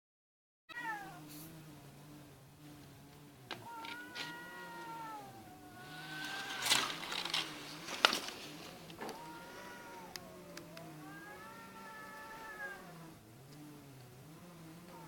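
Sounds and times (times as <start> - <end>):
cats yowling: 0.7 - 1.3, 3.5 - 7.5, 8.9 - 13.2, 14.8 - 15.0
cat growling: 3.5 - 7.9, 8.8 - 13.2, 14.2 - 15.0.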